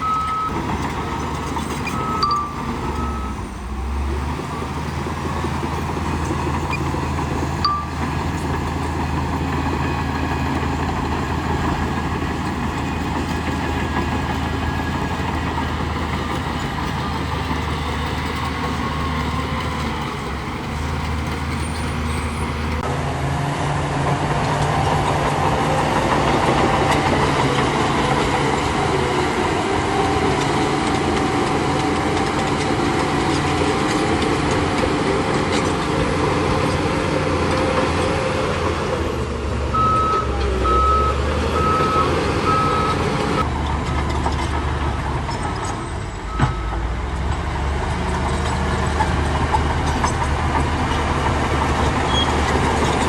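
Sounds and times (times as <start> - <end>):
heavy diesel engine droning: 0.0 - 53.0.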